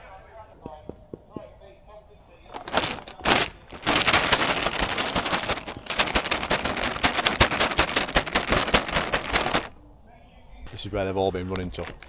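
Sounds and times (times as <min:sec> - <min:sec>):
twigs crackling and snapping: 0:02.5 - 0:09.7.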